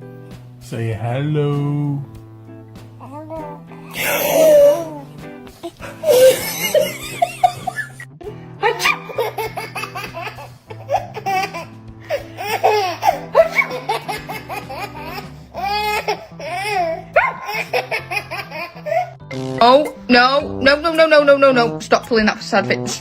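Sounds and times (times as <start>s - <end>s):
soft background music: 0.0s - 23.0s
baby laughing: 3.0s - 20.1s.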